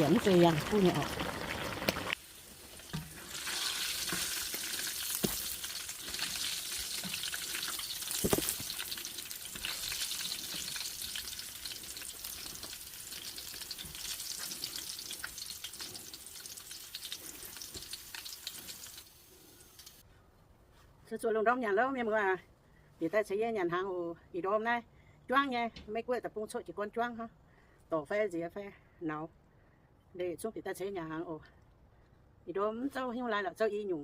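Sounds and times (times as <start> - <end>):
food sizzling in a pan: 0.0 - 20.0.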